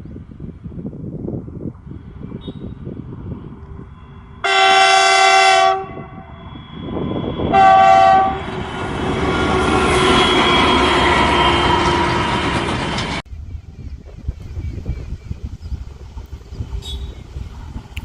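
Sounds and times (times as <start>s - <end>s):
train rumbling past: 0.0s - 18.0s
locomotive horn blasts: 4.4s - 6.4s, 7.4s - 8.6s, 9.3s - 12.3s.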